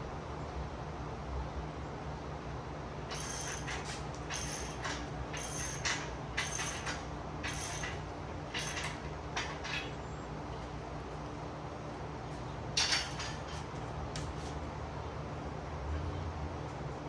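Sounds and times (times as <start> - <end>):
ratchet wrench rasping: 3.1 - 10.0.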